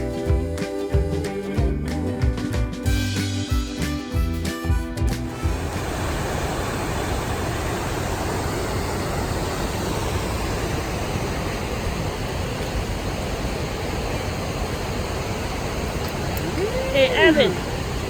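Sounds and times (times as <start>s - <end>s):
rushing stream water: 5.4s - 18.0s.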